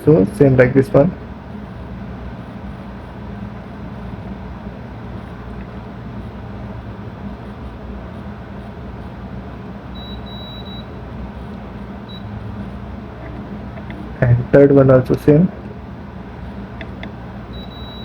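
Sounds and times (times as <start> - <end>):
steady low hum: 0.0 - 18.0
meter continuity beep: 9.9 - 11.0, 12.0 - 12.3, 17.5 - 18.0.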